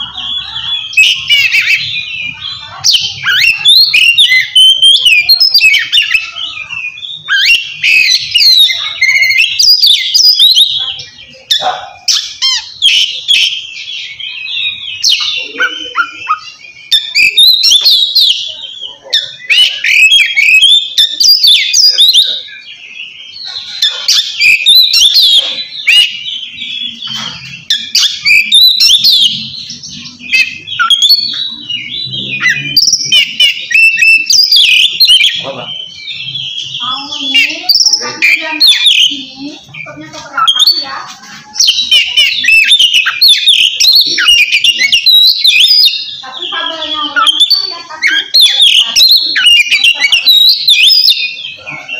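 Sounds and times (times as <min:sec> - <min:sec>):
magpie-robin singing whistled phrases: 0:00.0 - 0:51.9.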